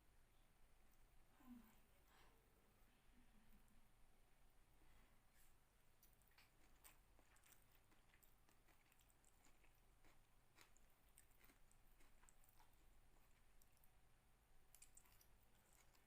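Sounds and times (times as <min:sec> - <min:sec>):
low steady hum: 0:00.0 - 0:16.0
chewing with mouth clicks: 0:05.9 - 0:16.0.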